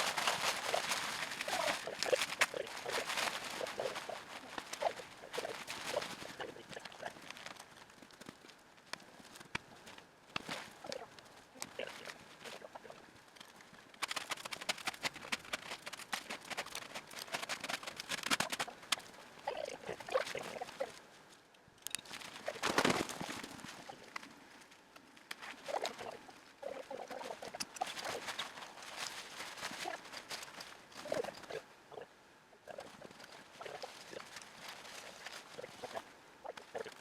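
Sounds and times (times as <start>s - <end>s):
tent handling in snow crunching: 0.0s - 13.0s, 22.0s - 31.7s, 32.7s - 37.0s
crackly clicks: 0.0s - 20.7s, 21.5s - 26.1s.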